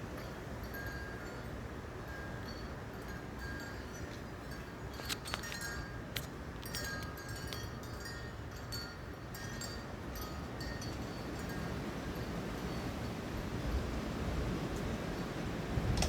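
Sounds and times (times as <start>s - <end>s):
wind buffeting microphone: 6.7s - 16.0s.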